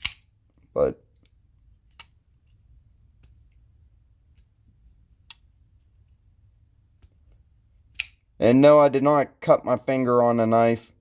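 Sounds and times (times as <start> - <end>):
folding knife clicking: 0.0 - 0.3, 7.9 - 8.2
knife blade locking click: 0.0 - 0.3, 7.9 - 8.2.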